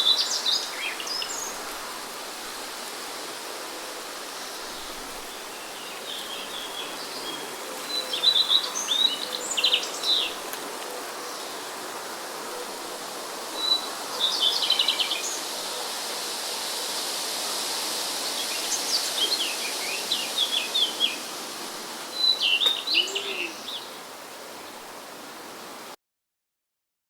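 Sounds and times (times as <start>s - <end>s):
songbirds chirping: 0.0s - 2.9s, 4.0s - 15.5s, 18.4s - 25.0s
wind hiss: 0.0s - 26.0s.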